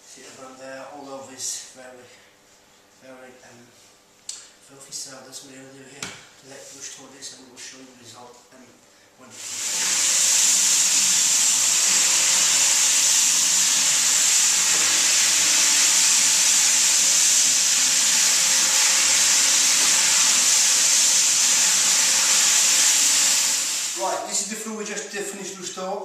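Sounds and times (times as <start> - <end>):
floor-cleaning machine hissing: 9.3 - 24.5.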